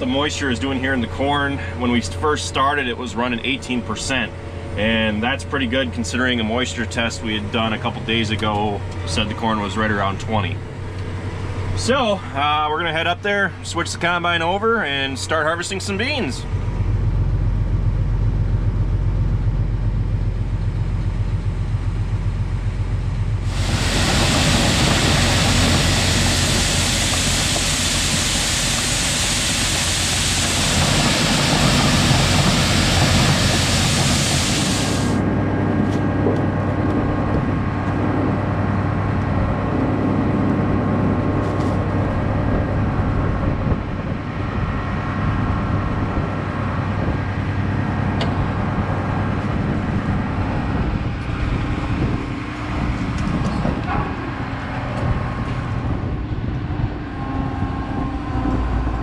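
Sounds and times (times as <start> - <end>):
tractor engine running: 0.0 - 59.0
loud hiss: 23.4 - 35.2.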